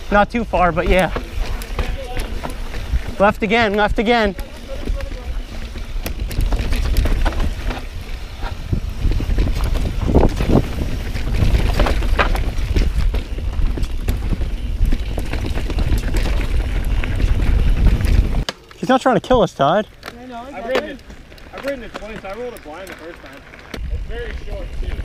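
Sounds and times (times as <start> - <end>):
steady rumble: 0.0 - 18.4
wind buffeting microphone: 0.0 - 18.4, 23.7 - 25.0
mountain bike rattling and clattering: 0.0 - 25.0.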